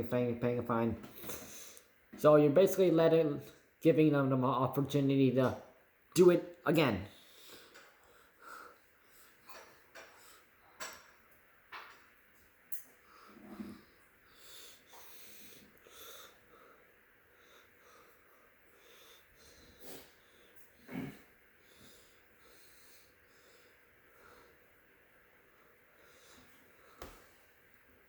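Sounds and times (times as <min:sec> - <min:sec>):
faint breathing: 0:01.1 - 0:01.9, 0:07.1 - 0:10.8, 0:13.0 - 0:27.6.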